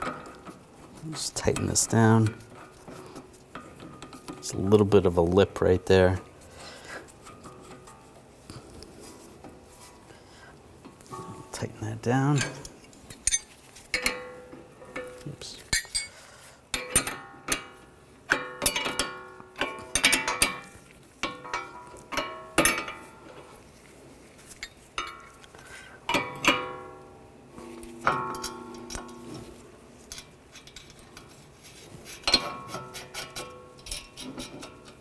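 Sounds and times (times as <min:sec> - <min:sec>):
metal tools clinking and ringing: 0:12.3 - 0:16.2, 0:27.8 - 0:31.3, 0:33.3 - 0:35.0.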